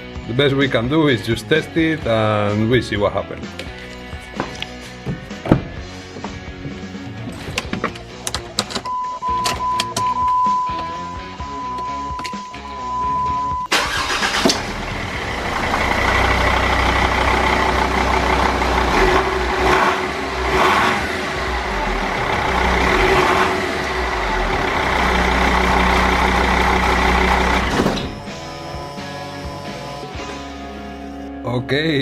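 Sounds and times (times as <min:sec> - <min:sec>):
diesel engine running: 0:10.6 - 0:30.2.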